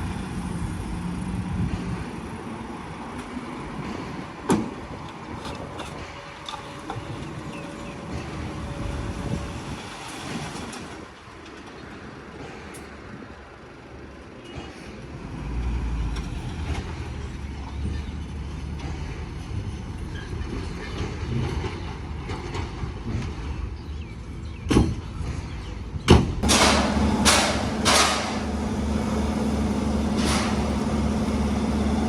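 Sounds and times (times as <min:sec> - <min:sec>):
diesel engine running: 0:26.4 - 0:32.0
machinery knocks: 0:26.4 - 0:32.0.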